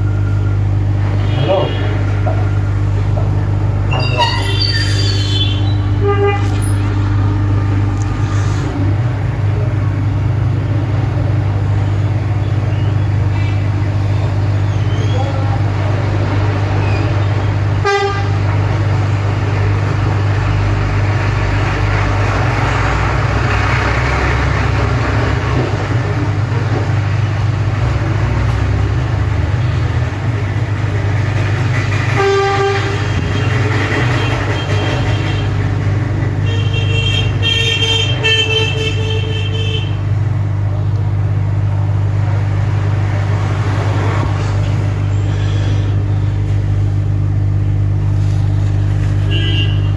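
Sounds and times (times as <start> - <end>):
street traffic hum: 0.0 - 49.9
vehicle horns honking: 3.9 - 6.9, 17.8 - 18.5, 32.0 - 35.7, 36.4 - 40.1, 49.2 - 49.9.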